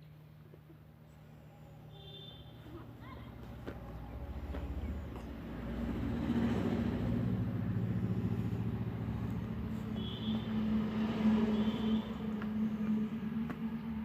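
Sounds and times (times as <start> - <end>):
vehicle engine running: 3.4 - 14.0.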